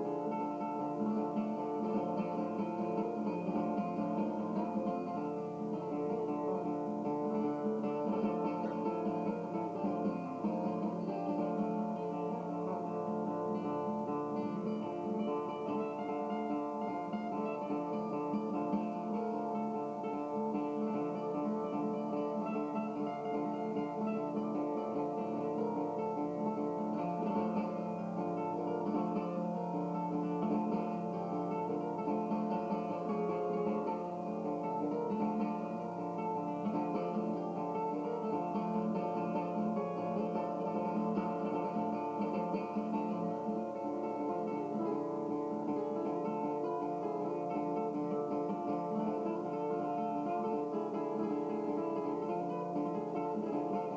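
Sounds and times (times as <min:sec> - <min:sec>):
acoustic guitar plucking: 0:00.0 - 0:53.9.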